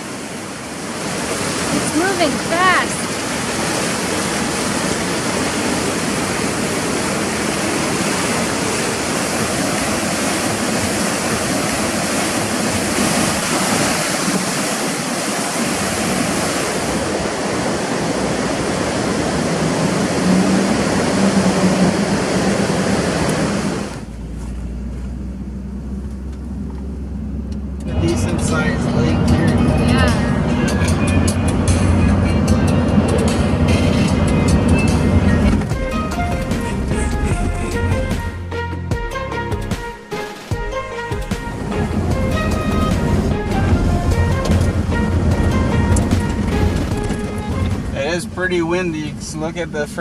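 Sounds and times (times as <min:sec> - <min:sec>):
water rushing: 0:00.0 - 0:38.6, 0:39.2 - 0:50.0
vehicle low hum: 0:16.8 - 0:38.4, 0:41.3 - 0:50.0.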